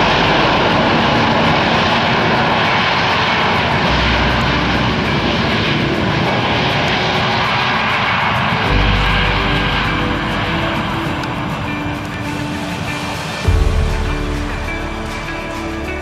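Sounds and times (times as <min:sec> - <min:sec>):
jet engines rushing: 0:00.0 - 0:16.0.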